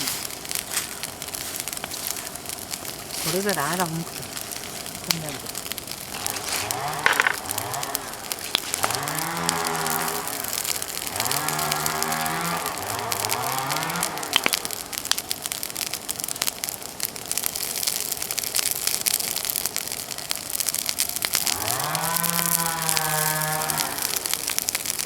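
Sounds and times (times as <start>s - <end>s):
bonfire crackling: 0.0s - 25.0s
low moo-like calls: 8.8s - 10.5s, 21.5s - 24.2s.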